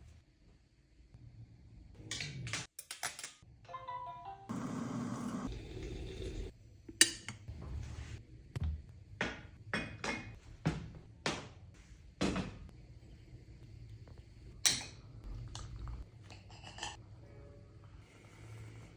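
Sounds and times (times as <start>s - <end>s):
dishes and utensils clinking: 16.2s - 17.0s.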